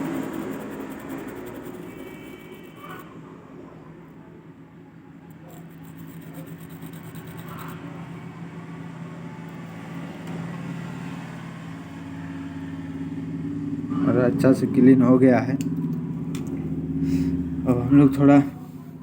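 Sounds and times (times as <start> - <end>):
low motor hum: 5.3 - 19.0.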